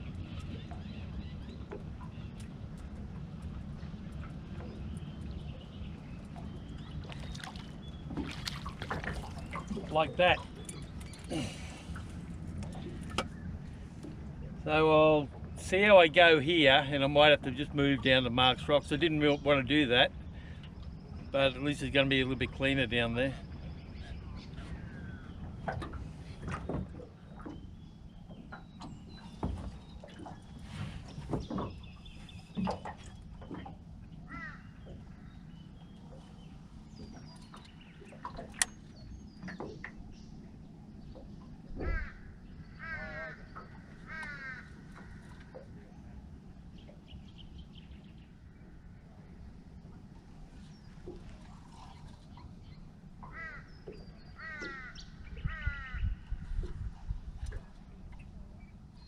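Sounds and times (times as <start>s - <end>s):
birds chirping: 0.0s - 59.0s
crow cawing: 34.3s - 34.7s, 41.8s - 43.4s, 44.0s - 45.3s, 53.3s - 53.7s, 54.4s - 56.0s.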